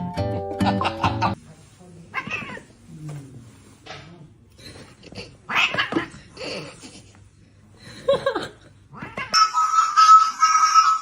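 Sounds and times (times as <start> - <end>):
cat meowing: 2.2 - 2.7.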